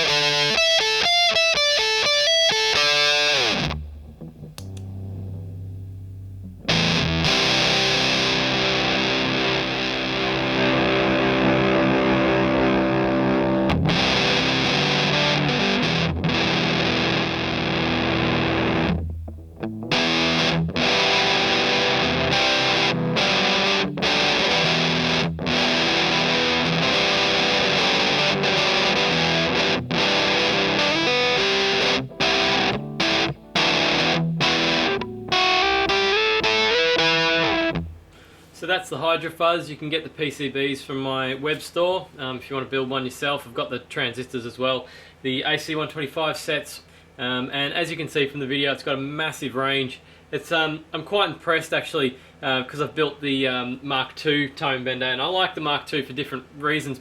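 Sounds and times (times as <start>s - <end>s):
fuzz-distorted electric guitar: 0.0s - 38.0s.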